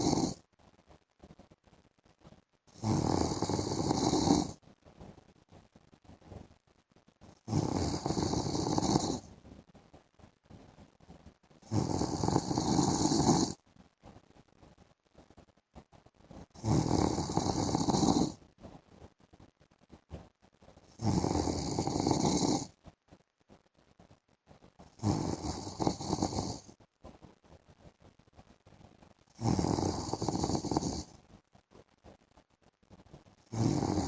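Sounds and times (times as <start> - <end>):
man snoring: 0.0 - 0.4, 2.8 - 4.6, 7.5 - 9.2, 11.7 - 13.6, 16.6 - 18.4, 21.0 - 22.7, 25.0 - 26.7, 29.4 - 31.1, 33.5 - 34.0
quiet breathing: 0.0 - 0.4, 2.2 - 6.5, 7.2 - 9.6, 10.5 - 14.8, 15.8 - 18.8, 20.1 - 22.8, 24.6 - 31.4, 32.9 - 34.0.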